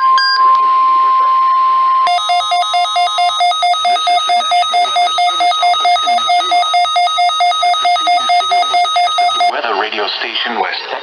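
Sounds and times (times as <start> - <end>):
electronic alarm warbling: 2.0 - 9.5
weather radio broadcast: 3.8 - 11.0.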